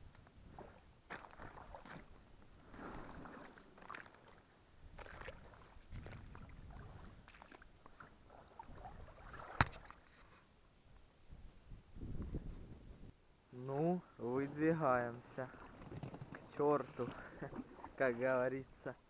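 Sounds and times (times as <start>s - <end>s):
oars dipping and splashing: 0.1s - 10.5s, 14.2s - 19.0s.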